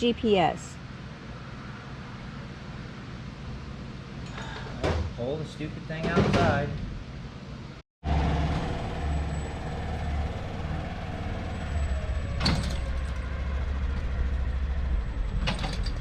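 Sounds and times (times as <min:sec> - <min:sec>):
vehicle engine running: 0:08.0 - 0:16.0.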